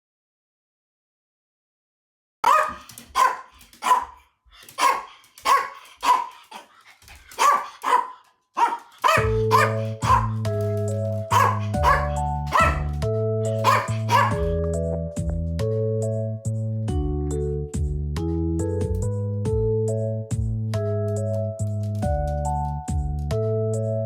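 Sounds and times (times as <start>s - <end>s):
dog barking: 2.4s - 14.6s
background music: 9.0s - 24.0s.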